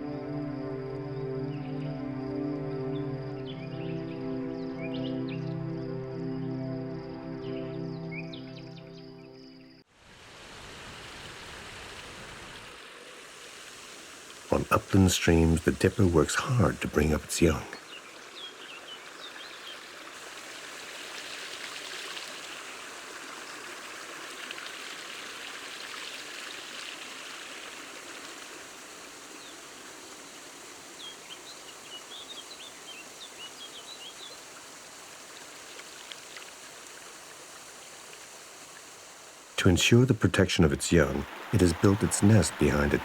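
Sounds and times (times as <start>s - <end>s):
stream water rushing: 9.9s - 43.0s.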